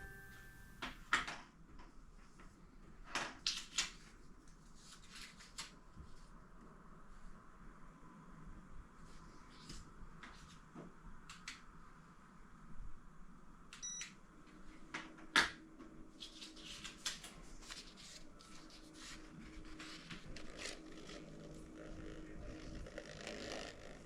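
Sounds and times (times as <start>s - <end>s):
short electronic beep: 0.0s - 0.8s.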